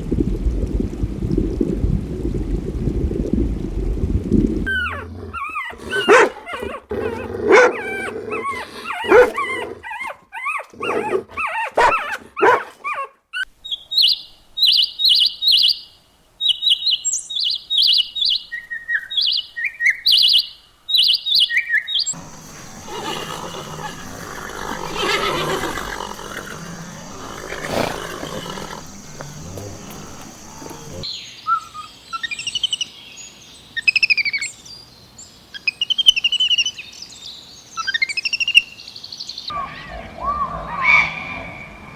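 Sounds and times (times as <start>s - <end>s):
small birds chirping: 4.7s - 41.8s
loud animal cries: 22.2s - 31.1s, 39.5s - 41.9s.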